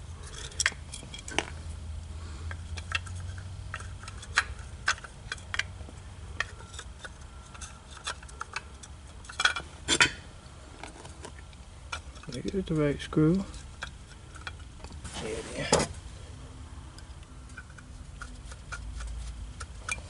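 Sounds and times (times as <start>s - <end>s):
metal screws clinking: 0.2s - 1.6s.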